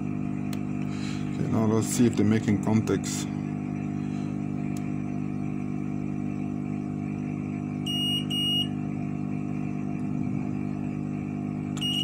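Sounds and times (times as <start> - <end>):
steady low hum: 0.0 - 12.0
multimeter short beeps: 7.9 - 8.7, 11.8 - 12.0.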